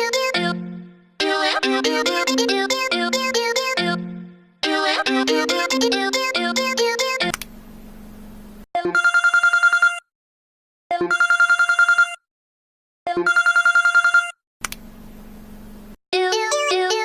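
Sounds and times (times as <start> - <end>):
telephone ringing trill: 8.9 - 10.1, 11.0 - 12.2, 13.2 - 14.4.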